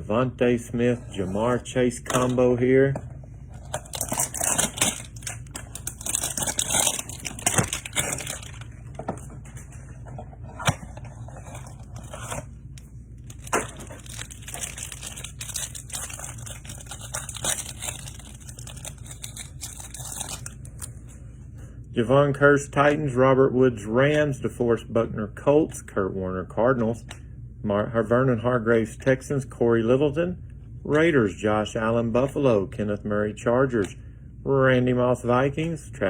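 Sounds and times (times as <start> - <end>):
packaging crinkling and tearing: 3.6 - 9.0, 10.6 - 20.9.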